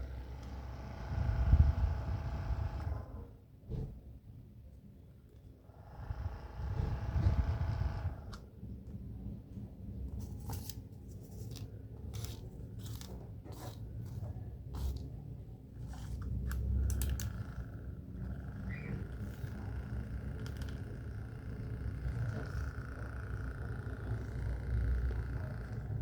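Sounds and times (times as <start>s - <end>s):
small electric motor whining: 0.0s - 3.2s, 5.8s - 8.3s, 17.1s - 26.0s.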